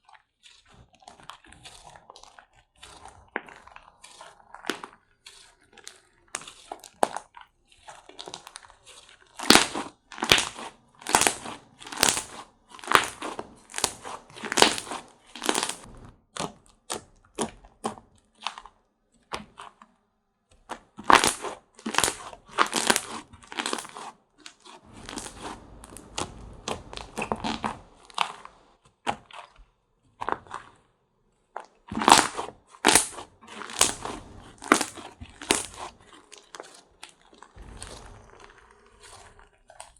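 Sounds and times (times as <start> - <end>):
slime squishing: 0.0 - 39.9
slime crackling pops: 9.4 - 18.0, 20.8 - 24.0, 24.6 - 29.3, 31.8 - 39.9.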